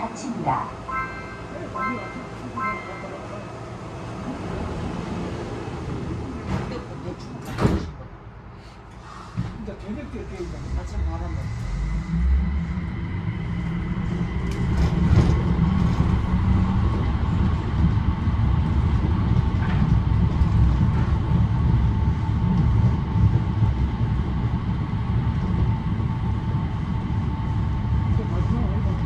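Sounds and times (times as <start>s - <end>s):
train interior low rumble: 0.0s - 29.0s.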